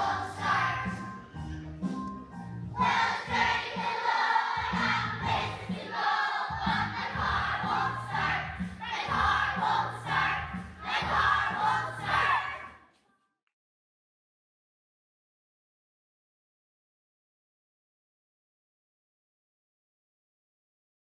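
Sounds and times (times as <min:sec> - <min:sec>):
children singing together: 0:00.0 - 0:01.4, 0:02.7 - 0:12.7
instrumental accompaniment with bass: 0:00.0 - 0:03.8, 0:04.6 - 0:05.7.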